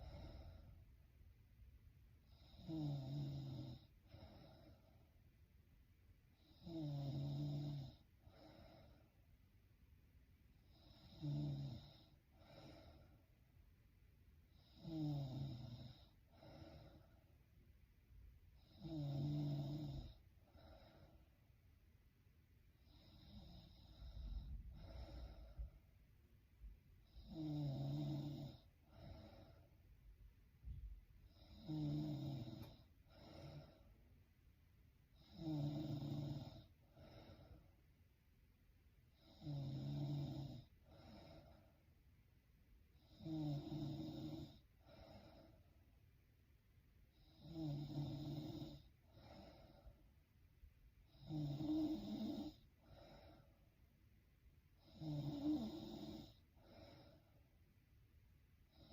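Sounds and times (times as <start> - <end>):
woman snoring: 0.0 - 0.7, 2.3 - 5.0, 6.4 - 9.1, 10.6 - 13.2, 14.5 - 17.2, 18.6 - 21.2, 22.8 - 25.8, 27.0 - 29.7, 31.3 - 33.9, 35.1 - 37.7, 39.2 - 41.7, 43.0 - 45.6, 47.1 - 50.0, 51.1 - 53.6, 54.8 - 57.4
soft breath: 0.0 - 1.0, 3.8 - 5.4, 7.9 - 9.5, 11.8 - 13.5, 15.8 - 17.6, 20.0 - 21.6, 22.8 - 26.2, 28.0 - 34.2, 36.2 - 38.0, 40.6 - 42.1, 44.4 - 46.0, 48.7 - 50.4, 52.5 - 54.0, 56.3 - 57.7.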